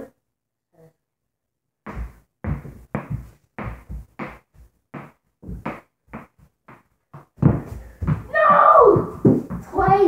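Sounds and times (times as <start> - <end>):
ball bouncing on a book: 5.0 - 8.3.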